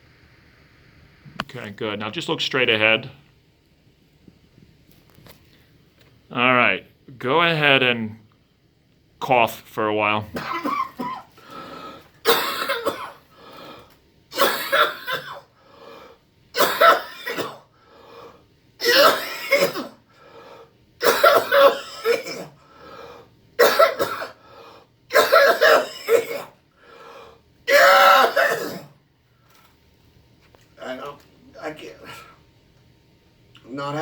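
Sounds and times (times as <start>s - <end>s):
man coughing hard: 10.3s - 11.4s, 12.2s - 13.3s, 14.3s - 15.5s, 16.6s - 17.7s, 18.8s - 20.0s, 21.0s - 22.6s, 23.6s - 24.4s, 25.1s - 26.6s, 27.7s - 29.0s.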